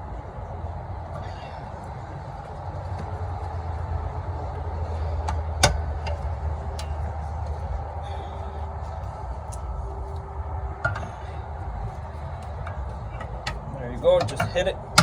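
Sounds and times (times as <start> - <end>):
steady low rumble: 0.0 - 15.0
spring snapping into place: 5.3 - 7.0.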